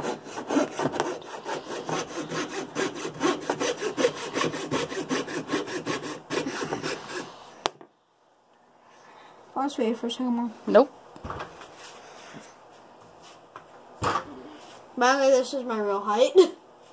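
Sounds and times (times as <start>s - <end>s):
saw cutting wood: 0.0s - 7.4s.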